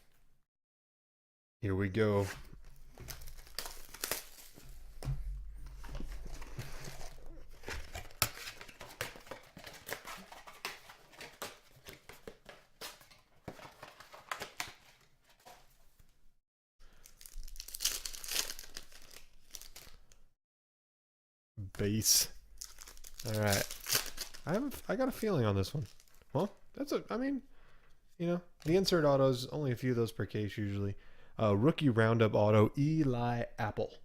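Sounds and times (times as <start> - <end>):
plastic wrapping torn and crinkled: 2.8 - 4.9, 6.0 - 12.0, 17.0 - 20.2, 22.6 - 25.1.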